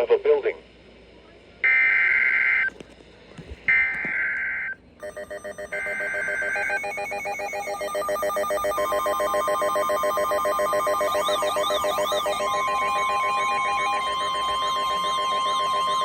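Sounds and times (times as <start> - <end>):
digital data tone bursts: 5.0 - 16.0
pulsing electronic tones: 5.0 - 16.0.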